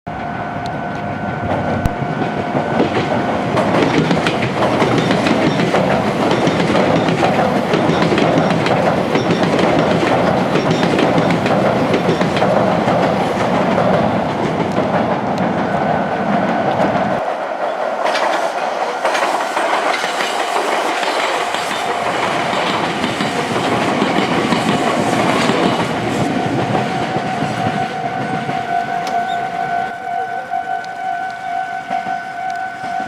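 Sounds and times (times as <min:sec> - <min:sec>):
train rumble: 0:00.1 - 0:33.0
train wheels clattering over rails: 0:01.0 - 0:30.0.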